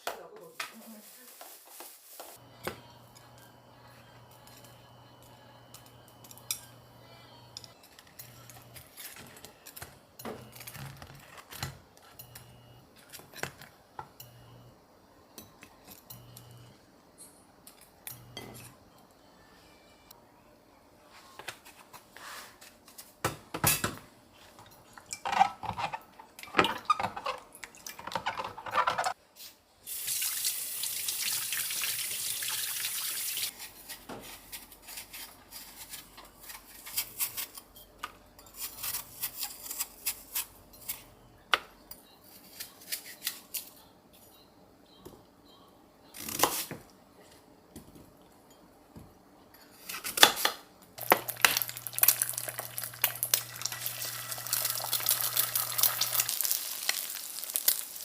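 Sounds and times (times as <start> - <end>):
dishes and utensils clinking: 23.3 - 29.2.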